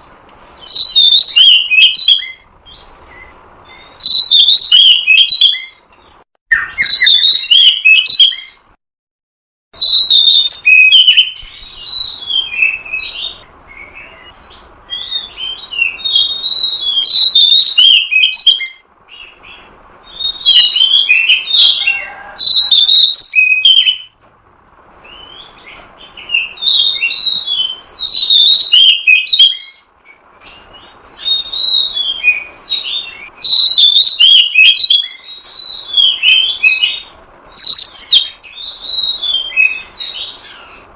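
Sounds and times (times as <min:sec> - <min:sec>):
bird whistling and chirping: 0:00.0 - 0:05.8, 0:06.5 - 0:08.6, 0:09.8 - 0:24.2, 0:25.0 - 0:40.9.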